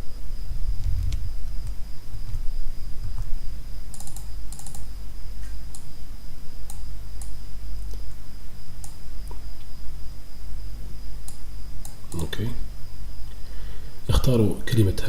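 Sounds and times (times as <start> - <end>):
faint high whine: 0.0 - 15.0
low electrical hum: 0.0 - 15.0
mouse and keyboard clicks: 3.9 - 4.9.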